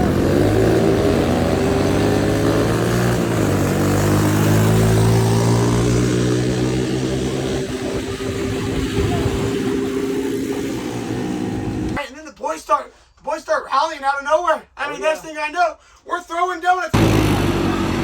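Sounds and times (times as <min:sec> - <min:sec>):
off-road vehicle engines running hard: 0:00.0 - 0:12.0, 0:17.0 - 0:18.0.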